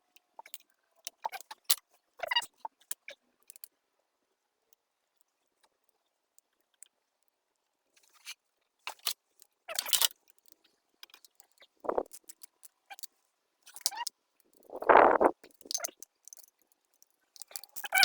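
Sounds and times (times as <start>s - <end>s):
rustling scrapes: 14.7s - 15.4s.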